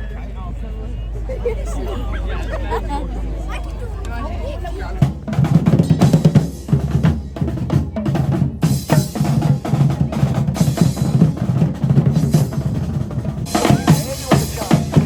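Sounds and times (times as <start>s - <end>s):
drum troupe playing fast rhythm: 4.5s - 15.0s
bright hissy percussion layer: 5.0s - 15.0s.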